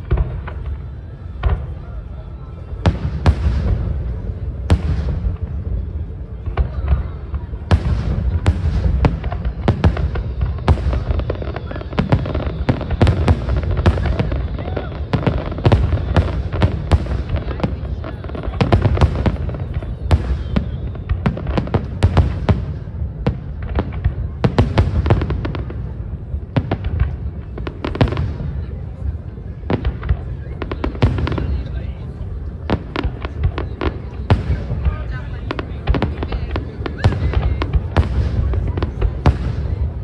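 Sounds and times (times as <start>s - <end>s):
fireworks bangs and crackles: 0.0s - 40.0s.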